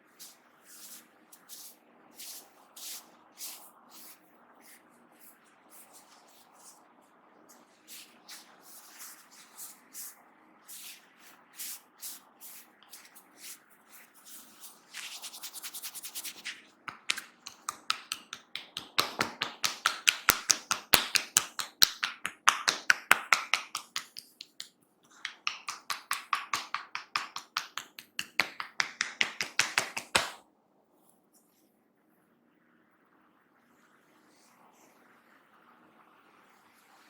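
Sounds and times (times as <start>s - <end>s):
rhythmic slapping on head and shoulders: 15.0s - 30.4s.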